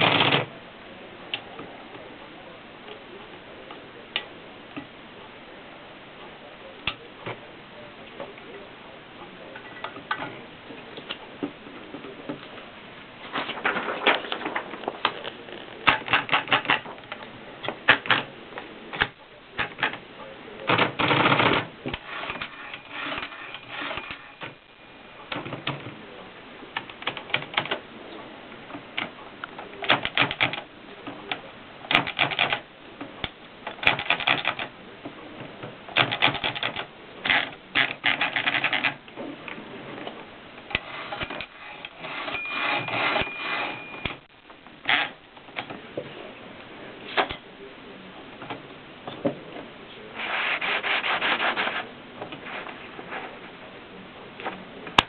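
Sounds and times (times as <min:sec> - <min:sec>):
manual typewriter key strikes: 0:29.8 - 0:30.6, 0:31.9 - 0:32.6, 0:33.8 - 0:34.7, 0:36.0 - 0:36.9.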